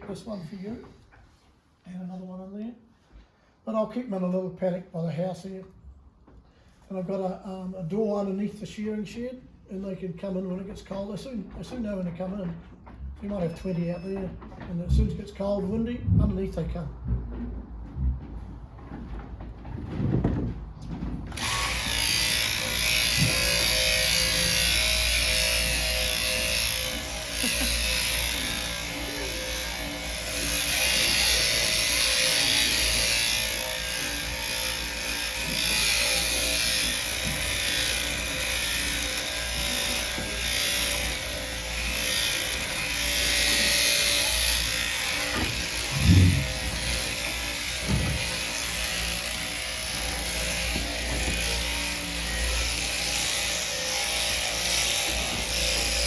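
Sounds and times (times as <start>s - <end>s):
shearing clipper running: 21.3s - 56.0s.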